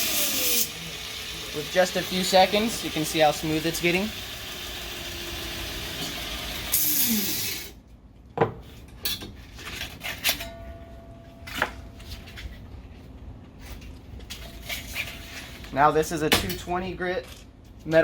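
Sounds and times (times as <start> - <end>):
belt grinder sanding steel: 0.0 - 7.7.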